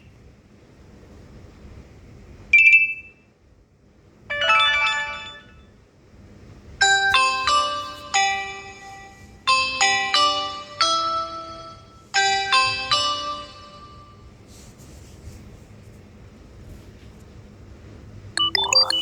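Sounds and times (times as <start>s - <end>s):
chiming notes: 18.4s - 19.0s
melodic bell-like ringtone: 18.4s - 19.0s
short high beep: 18.4s - 19.0s.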